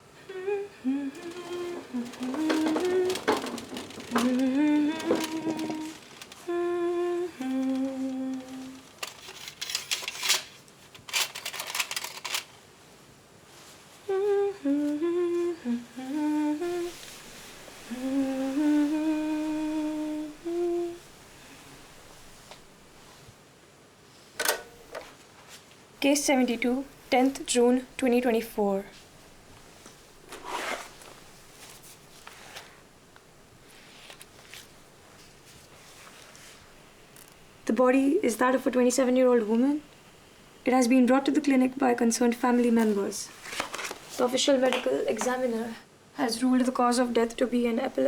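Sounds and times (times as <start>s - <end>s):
person humming a slow tune: 0.0s - 8.9s, 14.0s - 21.7s
sharp clicks and rattling: 1.2s - 6.4s, 8.4s - 12.5s.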